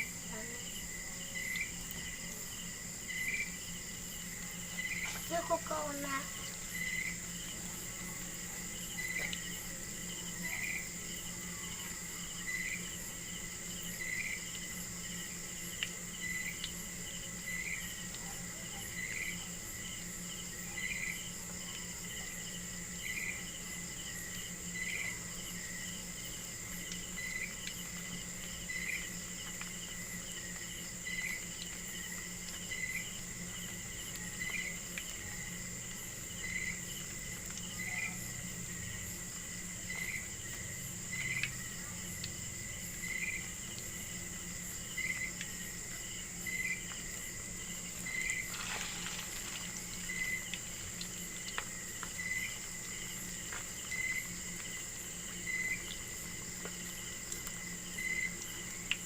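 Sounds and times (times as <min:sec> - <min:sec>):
insects trilling: 0:00.0 - 0:59.0
low steady hum: 0:00.0 - 0:59.0.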